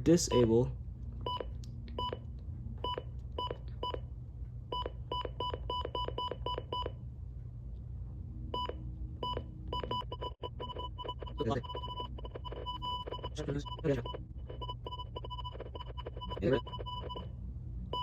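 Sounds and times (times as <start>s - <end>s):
radio key-press beeps: 8.6s - 17.2s.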